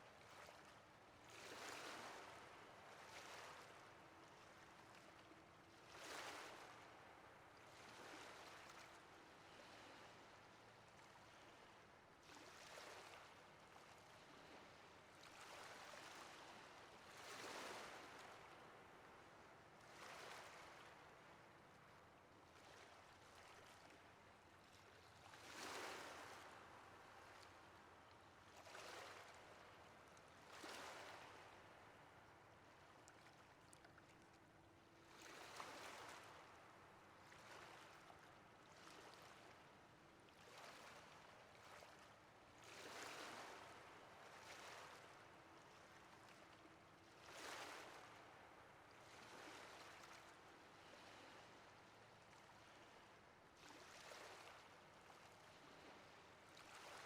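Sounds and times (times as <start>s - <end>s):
faint ocean waves: 0.0s - 57.0s.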